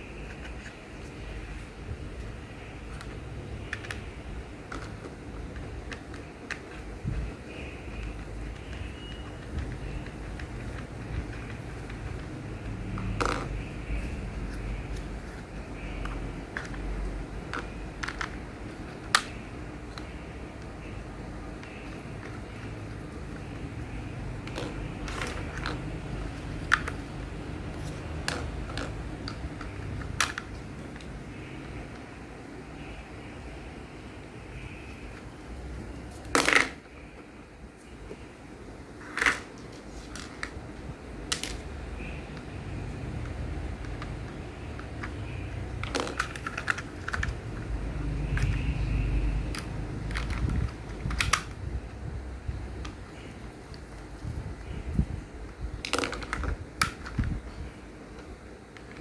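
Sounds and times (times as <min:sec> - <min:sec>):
low steady hum: 0:00.0 - 0:59.0
plastic toy pieces clicking: 0:02.9 - 0:20.2, 0:21.6 - 0:31.2, 0:43.2 - 0:51.6, 0:55.8 - 0:57.4.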